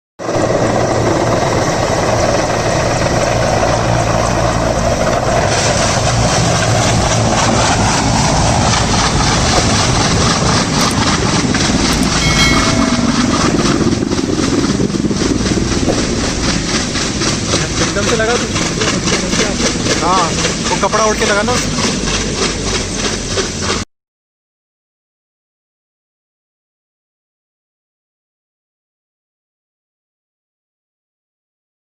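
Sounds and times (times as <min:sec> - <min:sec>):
helicopter running: 0:00.2 - 0:23.8.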